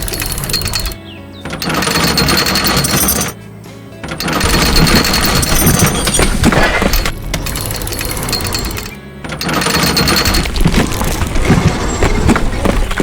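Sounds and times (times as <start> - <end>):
loud mechanical rattle: 0.0 - 3.4, 4.0 - 13.0
background music: 0.0 - 13.0.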